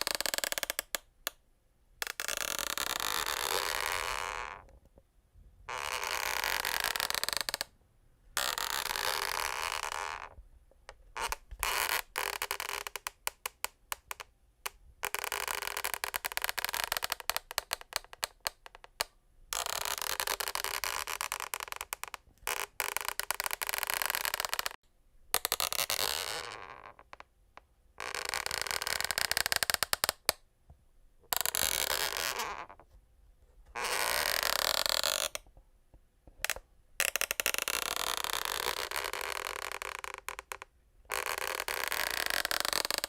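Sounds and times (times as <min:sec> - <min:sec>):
wooden floor creaking: 0:05.7 - 0:07.7, 0:08.4 - 0:10.4, 0:19.9 - 0:24.8, 0:33.8 - 0:35.5, 0:36.4 - 0:43.0.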